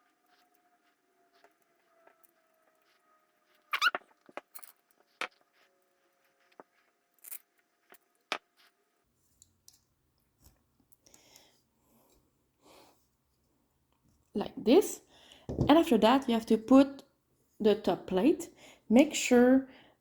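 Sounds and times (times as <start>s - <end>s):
brief squeak: 3.7s - 4.1s.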